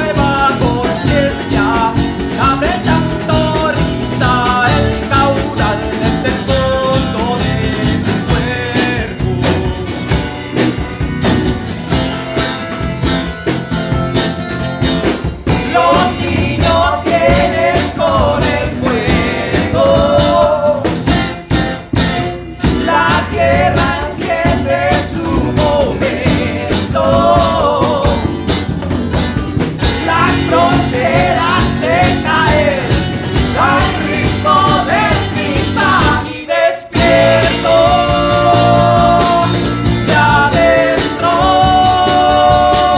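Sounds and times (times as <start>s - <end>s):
person singing: 0.0s - 9.6s, 15.5s - 21.1s, 22.6s - 28.4s, 29.8s - 42.9s
guitar strumming: 0.0s - 36.3s, 37.0s - 42.9s
drums and bass: 0.0s - 42.9s.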